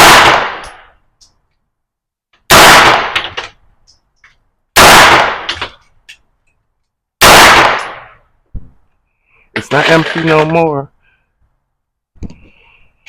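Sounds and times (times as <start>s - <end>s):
gunshots with echoing tail: 0.0s - 0.9s, 2.5s - 3.4s, 4.8s - 5.6s, 7.2s - 8.2s.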